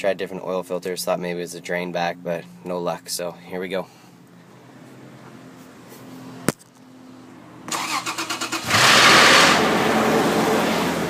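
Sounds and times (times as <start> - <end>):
engine starter cranking: 7.7 - 9.6
engine revving on start: 7.7 - 11.0.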